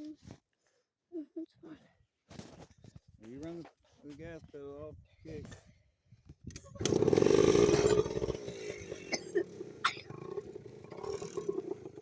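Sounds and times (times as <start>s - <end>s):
engine revving: 6.8s - 12.0s.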